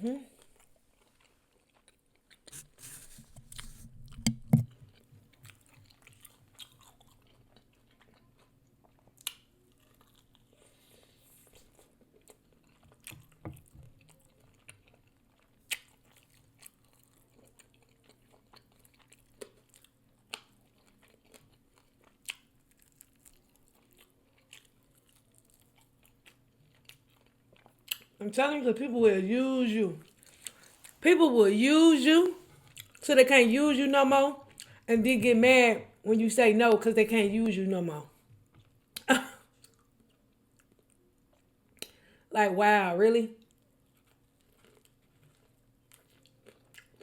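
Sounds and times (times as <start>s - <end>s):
chewing and lip-smacking: 0.4s - 28.2s, 32.5s - 33.0s, 34.4s - 34.9s, 38.2s - 42.0s, 43.4s - 47.0s.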